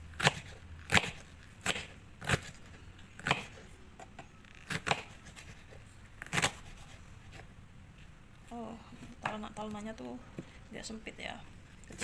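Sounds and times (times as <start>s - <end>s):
knife chopping cabbage on board: 0.1s - 3.7s, 4.6s - 7.4s.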